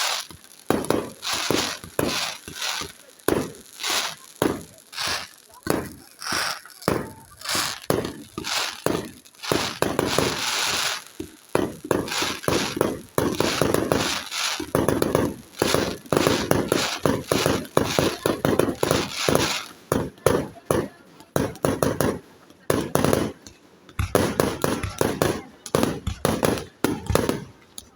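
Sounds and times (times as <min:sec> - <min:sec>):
fireworks bangs and crackles: 0:00.0 - 0:27.9.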